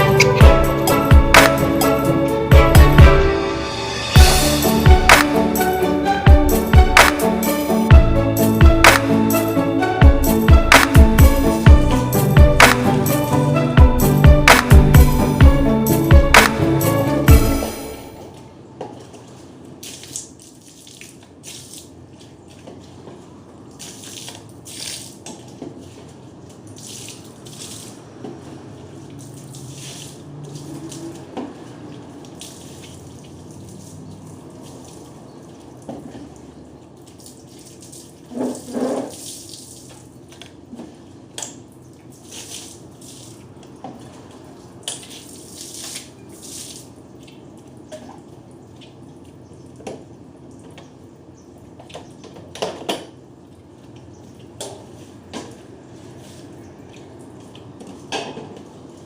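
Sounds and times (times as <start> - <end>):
water running: 0.0 - 40.8.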